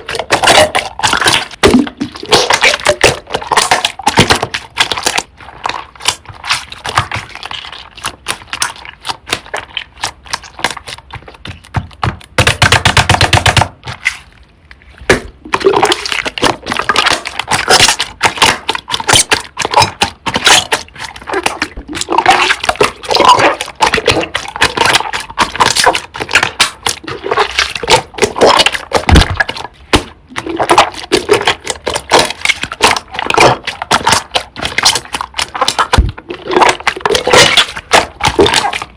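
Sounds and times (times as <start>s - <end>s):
crackling and popping air: 0.0s - 38.9s
slime squeezed and stretched: 13.8s - 38.9s.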